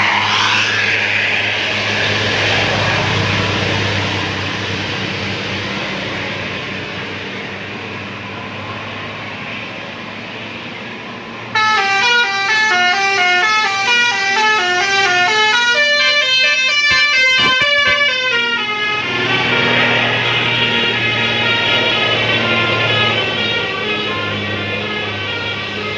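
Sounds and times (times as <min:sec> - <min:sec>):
steady rushing noise: 0:00.0 - 0:06.7
multi-tone air horn melody: 0:11.5 - 0:25.9.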